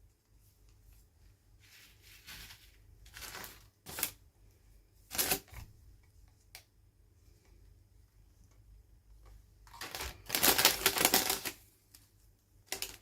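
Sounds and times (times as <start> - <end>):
packaging rustling and crinkling: 1.6 - 4.2, 9.7 - 11.6, 12.7 - 13.0.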